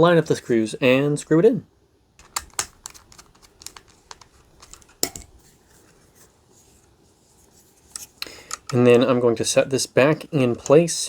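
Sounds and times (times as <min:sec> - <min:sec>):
small clicks and taps: 0:02.2 - 0:05.3.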